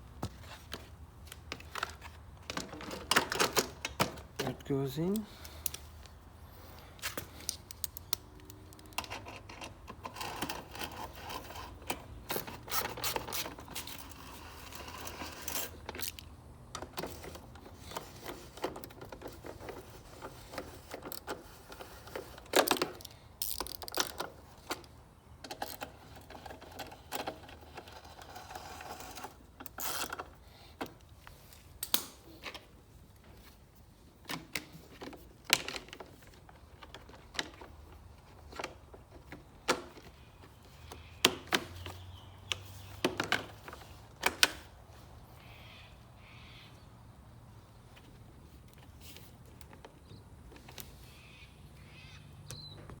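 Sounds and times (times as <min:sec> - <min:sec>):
small engine parts clicking: 0:07.4 - 0:30.4.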